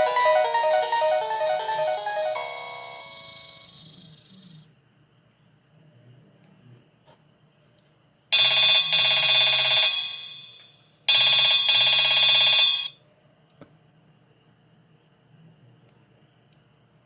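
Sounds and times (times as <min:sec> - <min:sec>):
phone ringtone like telephone bell: 0:00.0 - 0:03.8, 0:08.8 - 0:10.5, 0:11.2 - 0:12.9.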